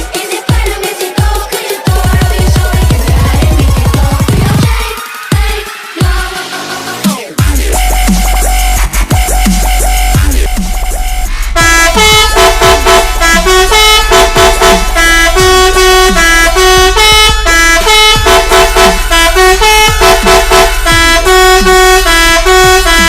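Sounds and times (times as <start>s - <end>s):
low electronic drum beat: 0.0s - 6.3s, 7.4s - 23.0s
musical horn playing a tune: 10.1s - 23.0s.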